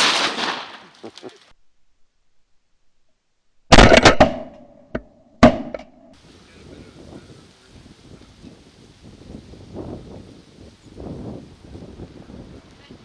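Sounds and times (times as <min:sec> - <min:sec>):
shotgun blasts: 0:00.0 - 0:00.9, 0:03.7 - 0:04.5.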